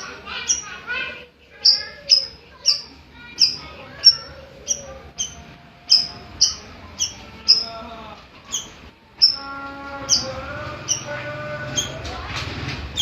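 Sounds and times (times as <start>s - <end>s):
faint warbling birds: 0.0s - 12.1s.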